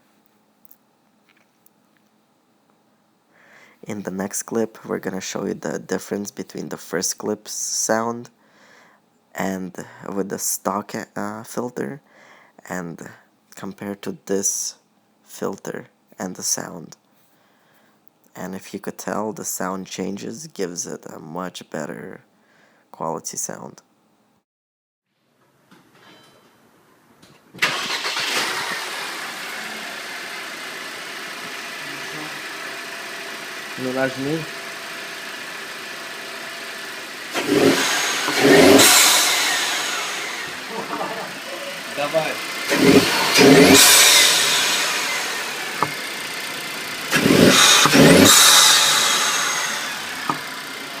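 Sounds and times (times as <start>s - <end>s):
car engine starting and idling: 27.6s - 51.0s.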